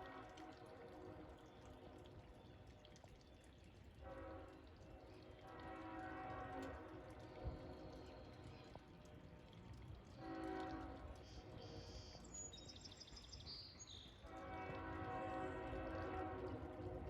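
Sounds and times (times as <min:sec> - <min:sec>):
locomotive air horn blasts: 0:05.4 - 0:06.9, 0:10.2 - 0:11.0, 0:14.2 - 0:17.0.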